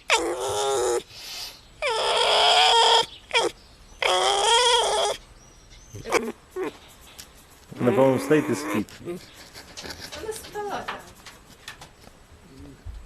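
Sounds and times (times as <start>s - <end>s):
animal crying out: 0.0s - 1.1s, 1.8s - 5.2s, 5.9s - 6.8s, 7.8s - 9.3s.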